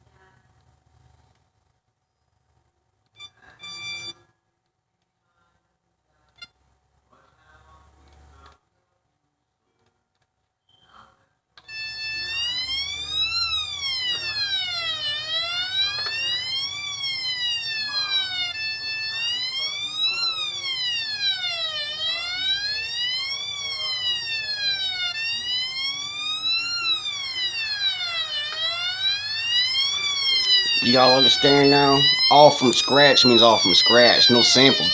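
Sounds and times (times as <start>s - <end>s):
synthesized siren wail: 11.7s - 34.9s.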